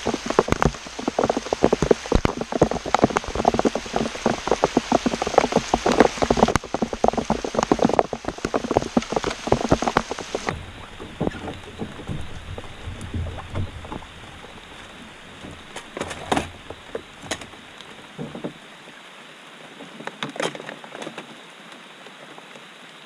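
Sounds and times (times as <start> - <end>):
irregular knocks and taps: 0.0 - 17.6
steady rain hiss: 0.0 - 23.0.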